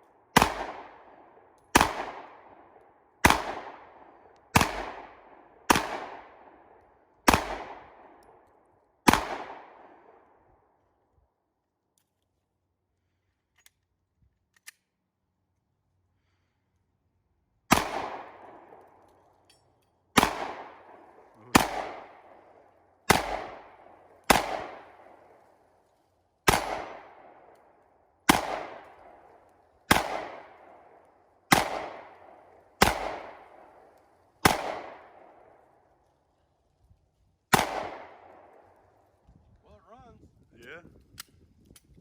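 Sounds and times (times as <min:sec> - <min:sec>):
pistol shots with echo: 0:00.3 - 0:08.4, 0:09.0 - 0:10.2, 0:17.7 - 0:18.9, 0:20.2 - 0:25.3, 0:26.4 - 0:27.5, 0:28.3 - 0:35.6, 0:37.5 - 0:38.6.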